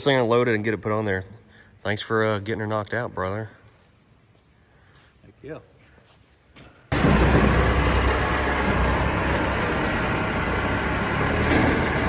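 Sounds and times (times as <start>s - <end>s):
vehicle engine idling: 6.9s - 12.0s.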